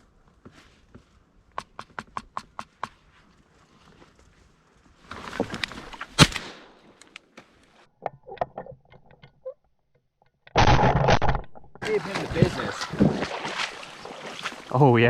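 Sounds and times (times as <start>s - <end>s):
rustling: 2.8s - 7.9s
shotgun shot: 6.2s - 6.8s
small clicks: 7.0s - 9.7s.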